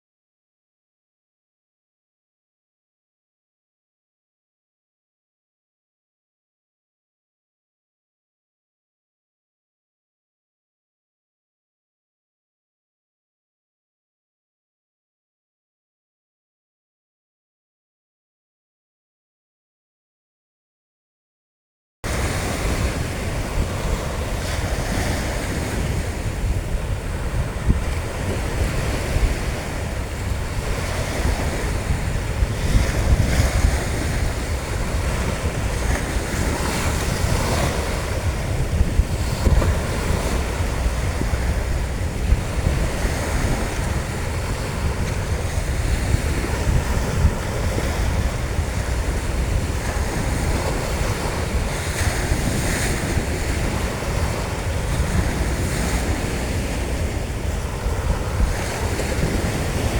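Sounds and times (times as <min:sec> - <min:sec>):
sea waves washing onto beach: 0:22.1 - 0:59.9
wind buffeting microphone: 0:22.1 - 0:59.9.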